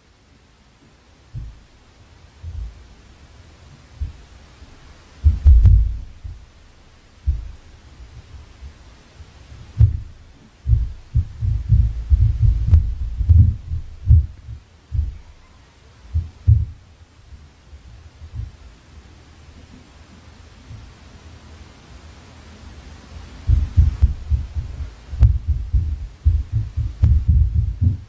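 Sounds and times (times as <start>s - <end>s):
heavy thuds from upstairs: 1.3s - 1.7s, 5.2s - 6.6s, 7.2s - 8.8s, 9.7s - 15.4s, 16.1s - 16.8s, 23.4s - 28.0s.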